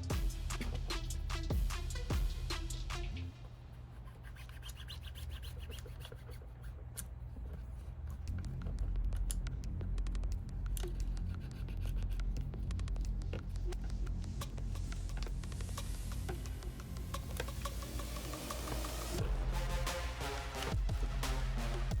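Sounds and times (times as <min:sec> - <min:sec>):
steady low hum: 0:00.0 - 0:22.0
hands rubbing and scratching phone: 0:03.4 - 0:15.8.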